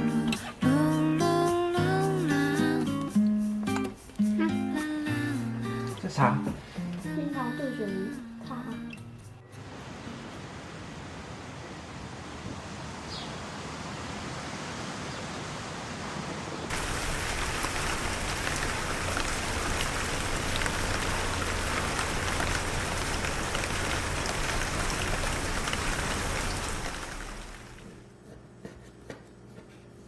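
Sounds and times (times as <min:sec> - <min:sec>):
steady rain falling: 0:09.6 - 0:28.0.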